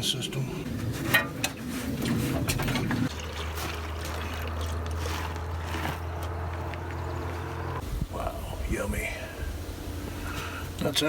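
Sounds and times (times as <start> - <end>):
liquid pouring and trickling: 2.0 - 7.8.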